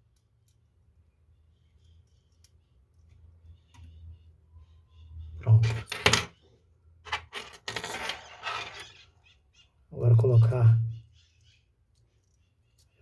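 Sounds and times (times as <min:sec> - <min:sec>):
short scraping and rustling: 0:07.1 - 0:09.0.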